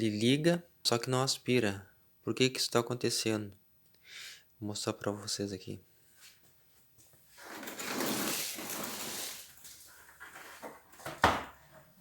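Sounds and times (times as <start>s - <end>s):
plastic scraping rustle: 7.4s - 11.0s.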